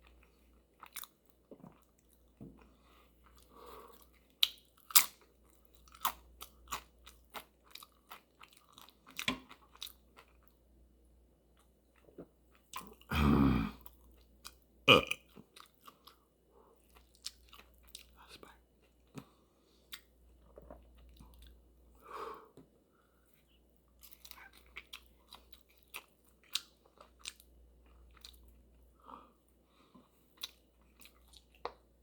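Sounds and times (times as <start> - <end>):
chewing and crunching food: 0.0 - 10.7, 11.5 - 13.1, 13.8 - 21.9, 22.6 - 32.0
loud low burp: 13.1 - 13.8, 14.9 - 15.2.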